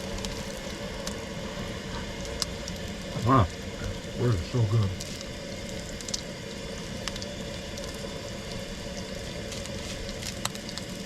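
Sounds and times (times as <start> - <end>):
dough sizzling in a pan: 0.0 - 11.0
grease popping and crackling: 0.0 - 11.0.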